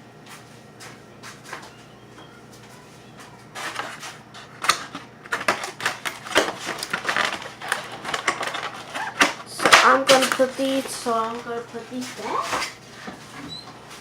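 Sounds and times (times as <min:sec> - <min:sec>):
kitchen items clicking and clattering: 0:03.5 - 0:14.0.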